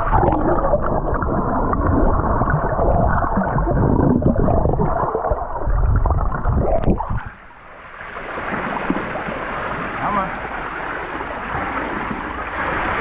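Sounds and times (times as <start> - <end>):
muffled underwater gurgling: 0.0 - 7.5.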